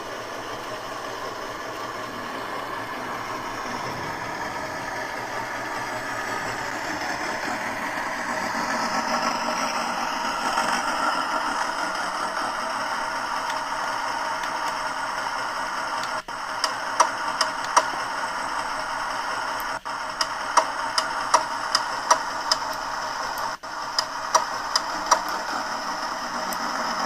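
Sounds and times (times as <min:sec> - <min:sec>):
engine running with a rattle: 0:00.0 - 0:27.0.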